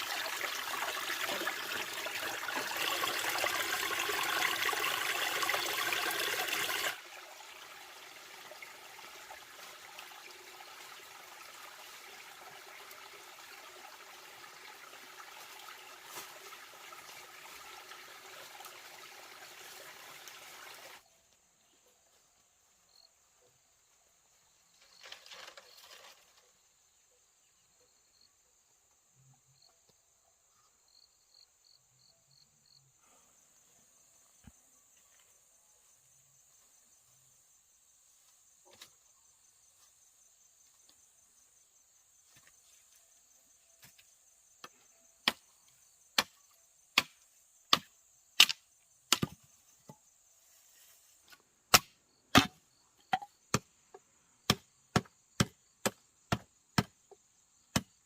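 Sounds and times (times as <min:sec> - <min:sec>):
insects droning: 0:00.0 - 0:58.0
wood being chopped: 0:47.0 - 0:49.4, 0:51.7 - 0:53.7, 0:54.5 - 0:57.0.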